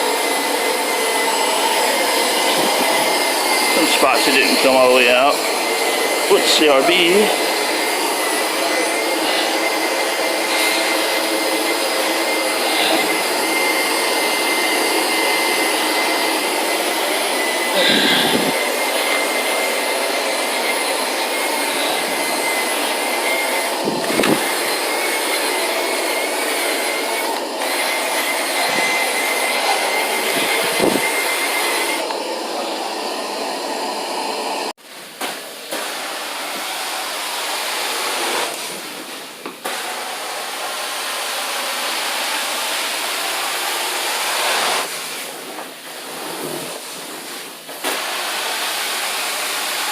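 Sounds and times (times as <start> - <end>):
vacuum motor running with whine: 0.0 - 34.7.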